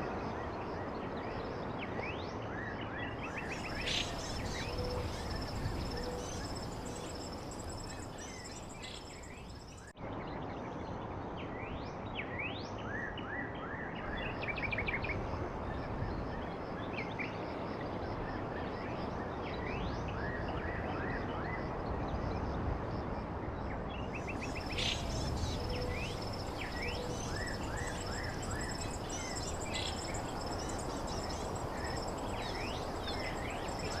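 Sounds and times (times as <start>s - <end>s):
bird chirps: 3.4s - 9.9s, 24.2s - 34.0s
high insect trill: 3.5s - 9.9s, 24.2s - 34.0s.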